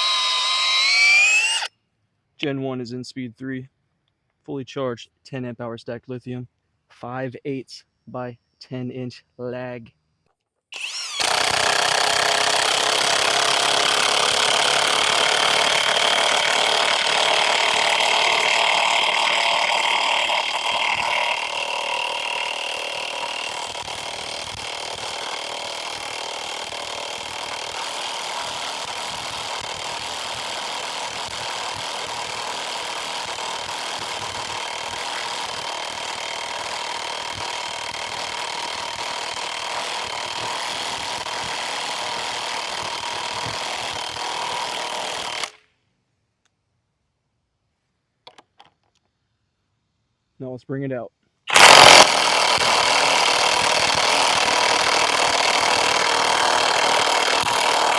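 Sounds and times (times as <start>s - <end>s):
impact wrench hammering: 10.8s - 45.6s, 51.5s - 57.9s.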